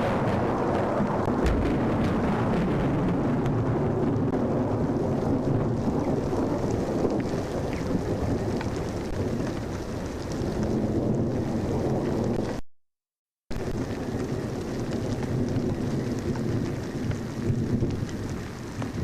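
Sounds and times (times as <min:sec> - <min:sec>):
steady rain: 0:00.0 - 0:12.6, 0:13.5 - 0:19.0
wind buffeting microphone: 0:00.0 - 0:12.6.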